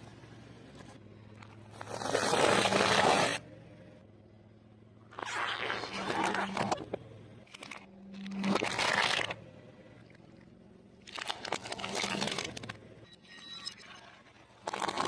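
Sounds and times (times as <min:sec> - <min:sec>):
crunching fried food: 0:11.0 - 0:12.7.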